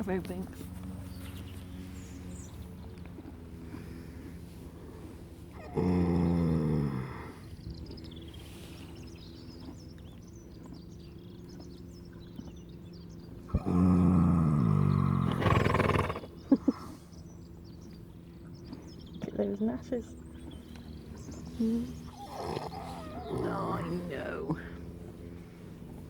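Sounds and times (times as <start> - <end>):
animal snoring: 3.3 - 7.7, 13.5 - 16.3, 21.3 - 25.6
quiet breathing: 3.6 - 5.6, 24.6 - 26.0.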